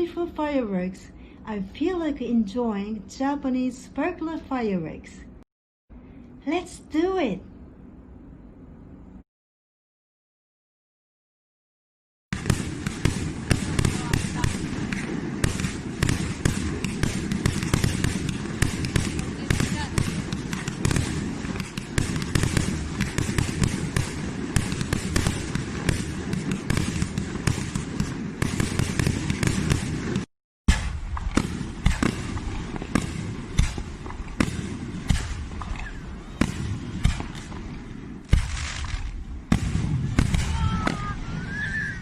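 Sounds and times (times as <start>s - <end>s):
fireworks crackling and popping: 12.3s - 41.8s.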